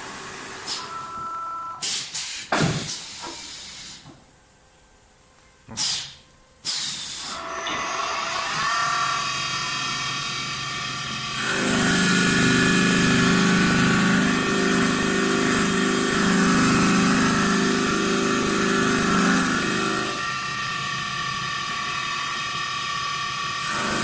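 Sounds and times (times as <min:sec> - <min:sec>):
loud blast of air: 0:01.8 - 0:04.0, 0:05.7 - 0:07.4
air hissing: 0:01.8 - 0:04.2, 0:05.7 - 0:07.4
sharp pneumatic knocks: 0:01.8 - 0:04.2, 0:05.7 - 0:07.9
lathe motor whine: 0:07.4 - 0:24.0.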